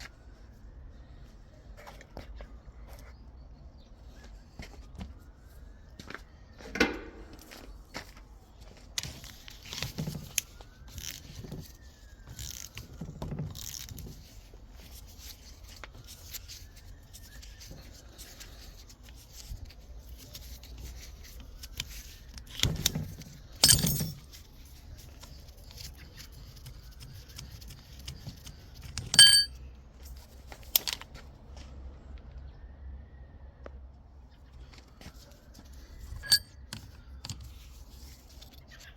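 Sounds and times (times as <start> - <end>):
sharp ringing metal clinks: 23.6 - 24.2, 29.2 - 29.6, 36.2 - 36.5
metal tools clinking and scraping: 23.6 - 24.3, 29.0 - 29.6, 36.2 - 36.6.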